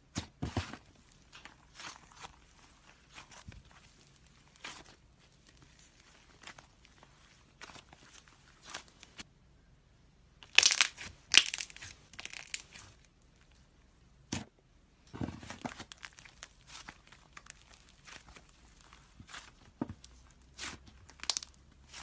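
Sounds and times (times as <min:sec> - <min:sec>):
slime crackling and popping: 0:10.4 - 0:13.0, 0:15.6 - 0:22.0.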